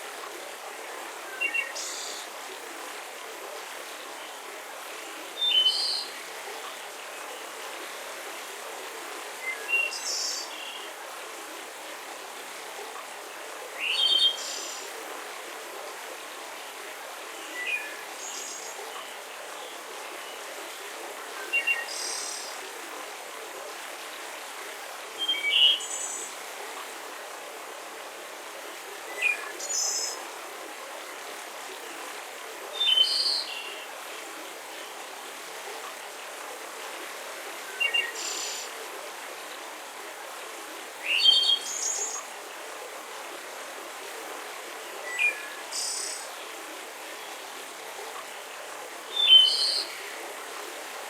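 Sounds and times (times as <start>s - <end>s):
forest ambience hiss: 0.0s - 51.0s.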